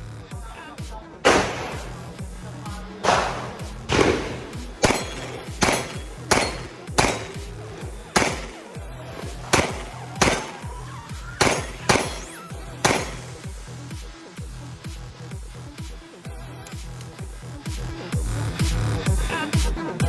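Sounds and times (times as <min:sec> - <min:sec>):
background music with bass line: 0:00.0 - 0:20.0
gunshots with ringing tail: 0:01.3 - 0:13.6.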